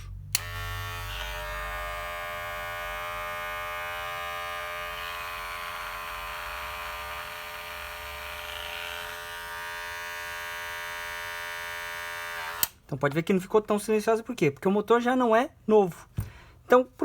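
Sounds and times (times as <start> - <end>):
hair clipper buzzing: 0.3 - 12.8.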